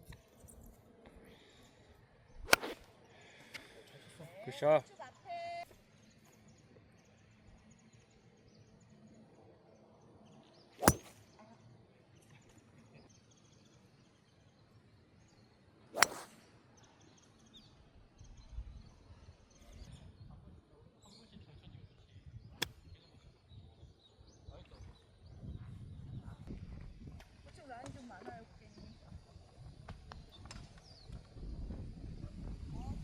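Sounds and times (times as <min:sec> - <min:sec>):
golf club striking ball: 0:02.5 - 0:02.8, 0:10.8 - 0:11.2, 0:16.0 - 0:16.3
wind rumble on microphone: 0:31.1 - 0:33.0.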